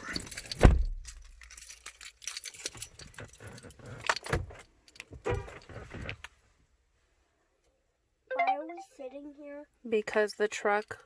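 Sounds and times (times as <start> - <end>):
keys jangling: 0.0 - 5.8.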